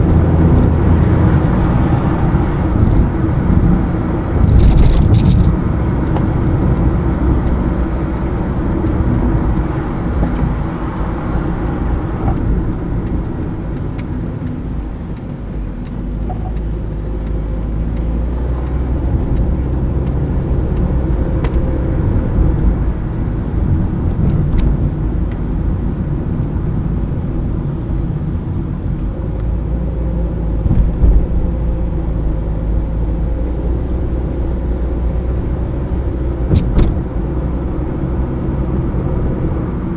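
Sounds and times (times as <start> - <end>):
car engine and tyre rumble: 0.0 - 39.9
faint regular ticking: 4.4 - 22.8.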